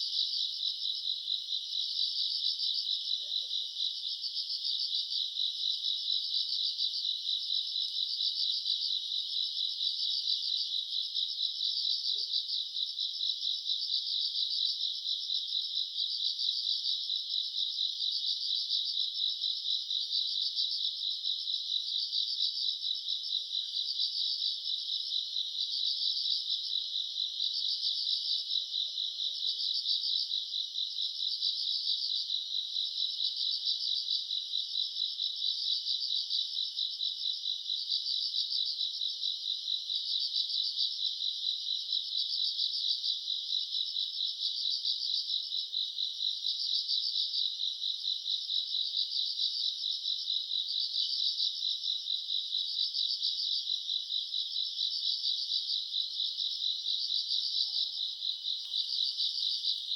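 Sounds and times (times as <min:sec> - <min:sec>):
crickets chirring: 0:54.9 - 0:59.9.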